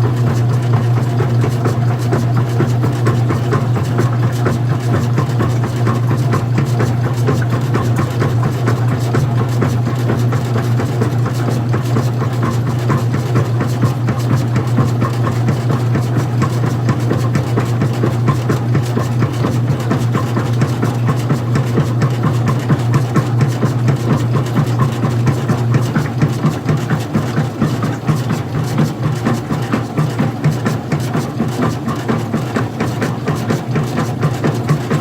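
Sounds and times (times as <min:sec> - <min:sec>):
washing machine clicking and rattling: 0:00.0 - 0:35.0
washing machine motor hum: 0:00.0 - 0:35.0.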